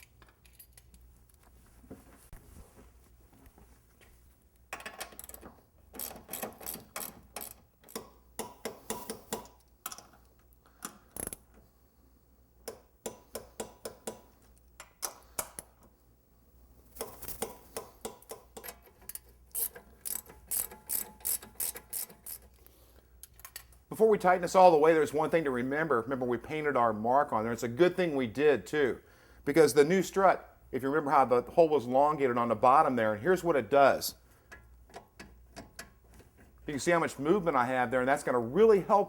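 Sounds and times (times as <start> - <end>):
hand ratchet clicking: 5.1 - 10.1, 17.4 - 22.6.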